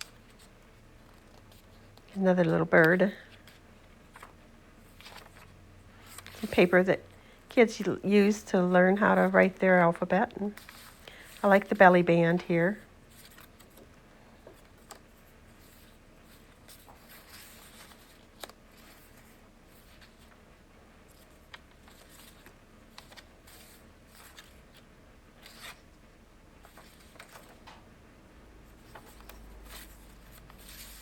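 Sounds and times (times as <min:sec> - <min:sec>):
paper pages rustling: 0:00.0 - 0:06.8, 0:10.4 - 0:11.9, 0:13.1 - 0:26.0, 0:26.6 - 0:27.8, 0:28.6 - 0:31.0.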